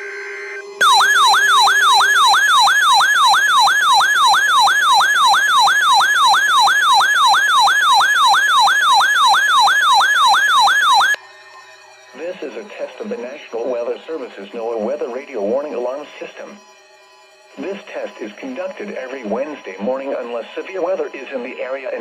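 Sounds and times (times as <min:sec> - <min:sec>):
electronic whooping alert tone: 0:00.8 - 0:11.2.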